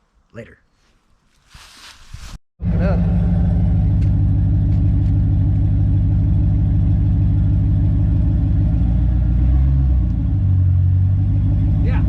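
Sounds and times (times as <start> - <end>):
vehicle engine running: 2.6 - 12.0.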